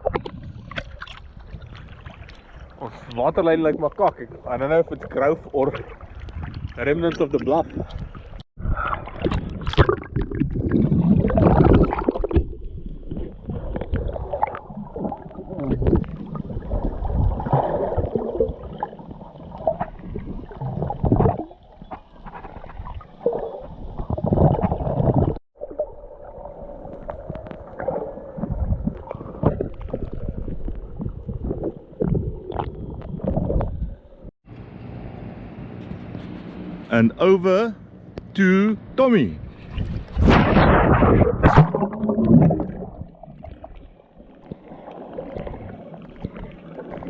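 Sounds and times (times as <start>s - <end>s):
muffled water sloshing and gurgling: 0.0s - 34.4s, 39.4s - 47.0s.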